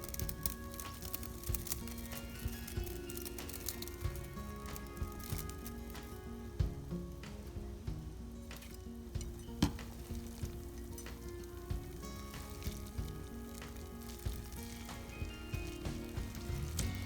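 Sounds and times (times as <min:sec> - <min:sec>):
background music: 0:00.0 - 0:17.0
food sizzling in a pan: 0:00.0 - 0:17.0.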